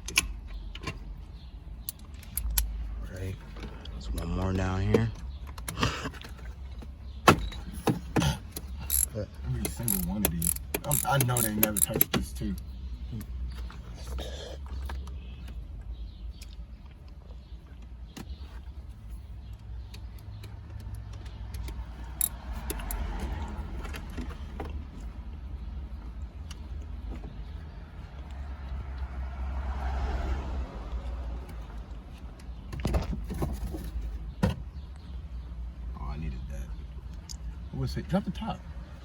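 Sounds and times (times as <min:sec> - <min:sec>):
metal parts clinking: 0:08.8 - 0:09.1, 0:09.7 - 0:12.1, 0:22.2 - 0:23.0.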